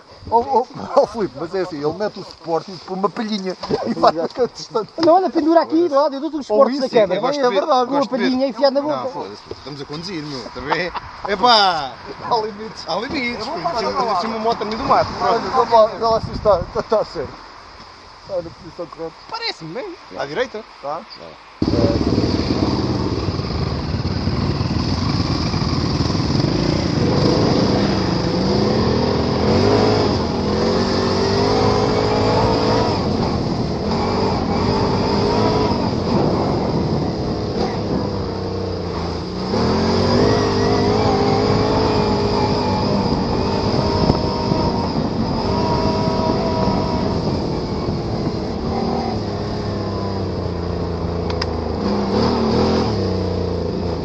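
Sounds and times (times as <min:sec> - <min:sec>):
atv engine revving: 0:21.6 - 0:54.0.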